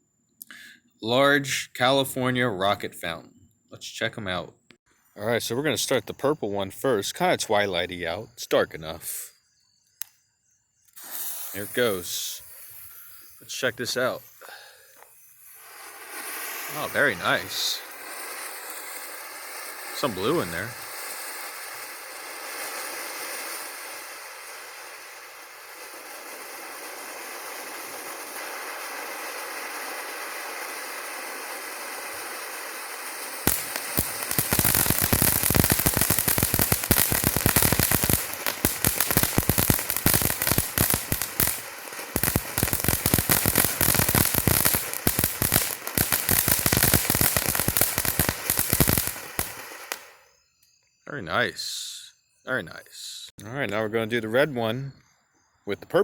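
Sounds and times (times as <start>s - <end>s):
firework crackling: 10.8s - 50.5s
firework spraying sparks hissing: 10.8s - 50.7s.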